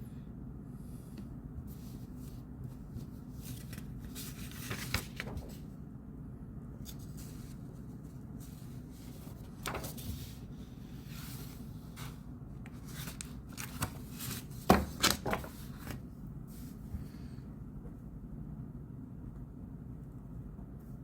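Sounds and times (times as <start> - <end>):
steady low hum: 0.0 - 21.0
rustling and handling noises: 1.6 - 5.7, 6.8 - 17.1.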